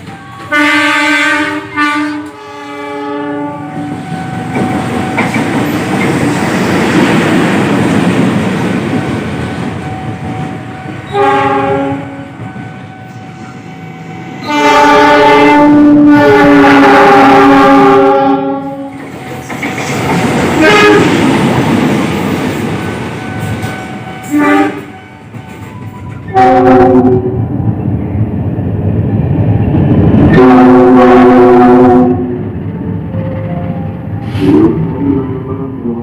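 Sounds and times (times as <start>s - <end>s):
multi-tone horn blasts: 0.4s - 3.9s, 11.0s - 12.4s, 14.4s - 19.0s, 20.6s - 21.2s, 23.6s - 25.2s, 26.3s - 27.4s, 30.3s - 32.4s.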